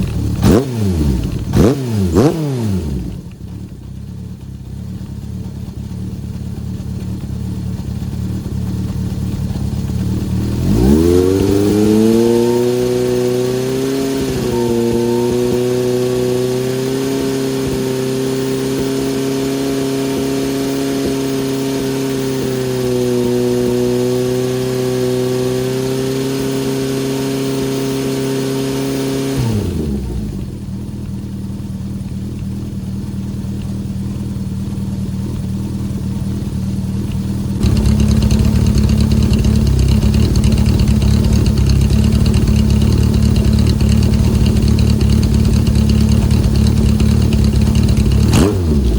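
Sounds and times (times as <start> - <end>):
motorcycle engine running: 0.0 - 48.9.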